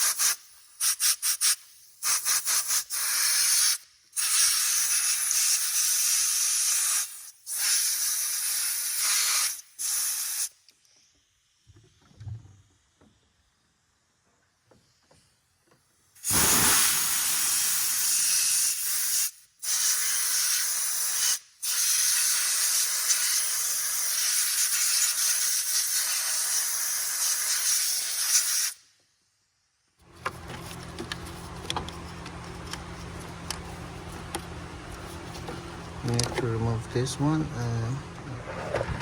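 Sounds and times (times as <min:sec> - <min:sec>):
compressed air blow gun hissing: 0:16.2 - 0:28.8.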